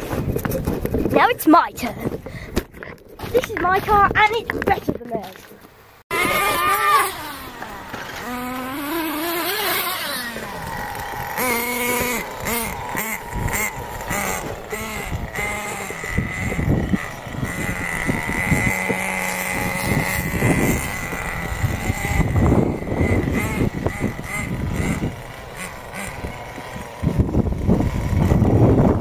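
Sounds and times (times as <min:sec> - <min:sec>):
small nitro engine revving: 0:06.1 - 0:29.0.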